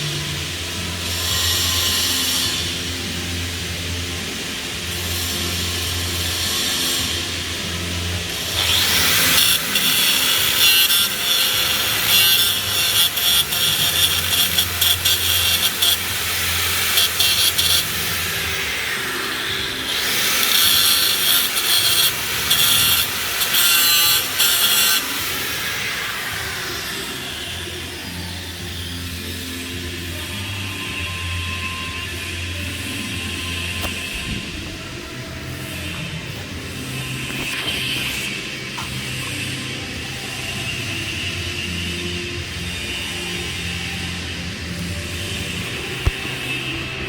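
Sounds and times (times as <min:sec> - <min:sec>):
welding arc crackling: 0:04.5 - 0:27.6, 0:44.7 - 0:47.0.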